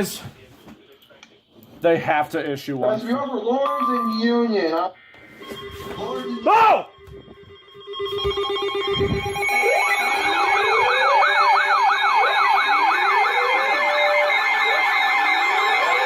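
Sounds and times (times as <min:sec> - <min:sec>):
electronic siren alert tone: 0:05.1 - 0:16.0.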